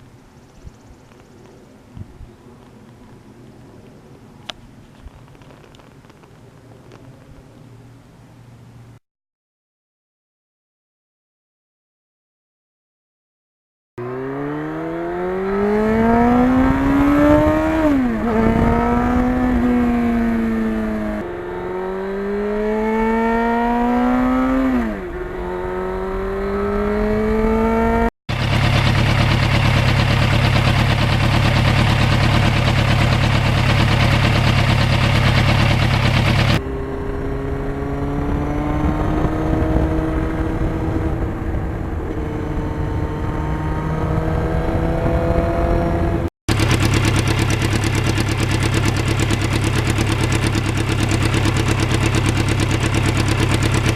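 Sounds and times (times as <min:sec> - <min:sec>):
motorcycle engine accelerating: 0:14.0 - 0:53.9.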